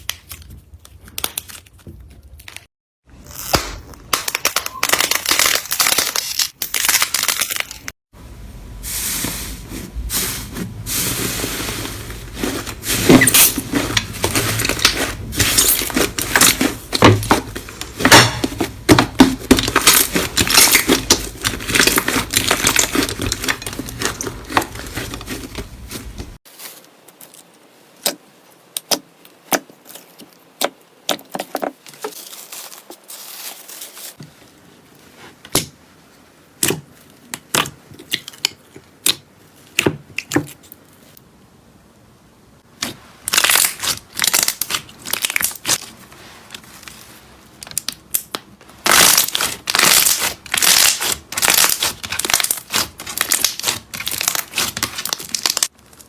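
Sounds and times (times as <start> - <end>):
slime crackling and popping: 13.0 - 25.3, 47.6 - 56.0.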